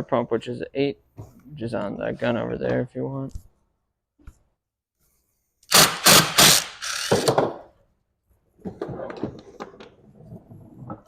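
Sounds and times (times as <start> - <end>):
ratcheting clicks: 5.7 - 7.3
impact gun rattling: 5.7 - 7.6.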